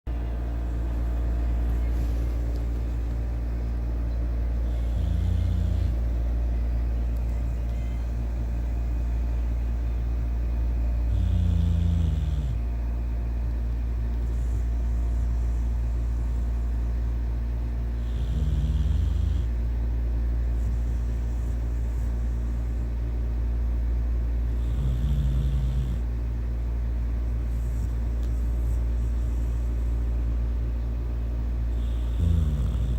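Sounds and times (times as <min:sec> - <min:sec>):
steady low rumble: 0:00.1 - 0:24.8
puppy snoring: 0:00.6 - 0:12.8, 0:13.9 - 0:19.7, 0:20.4 - 0:23.2, 0:24.4 - 0:26.2, 0:27.2 - 0:30.2, 0:31.6 - 0:32.9.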